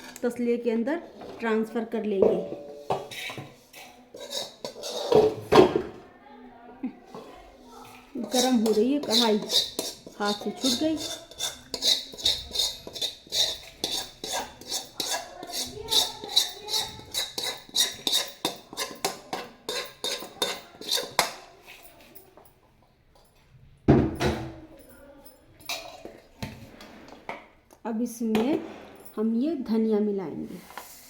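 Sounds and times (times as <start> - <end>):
spoon scraping metal pan: 1.0 - 5.8, 7.1 - 22.0, 25.7 - 27.4, 30.4 - 31.0
metal cookware clunk: 2.1 - 3.6, 4.2 - 6.0, 8.2 - 21.4.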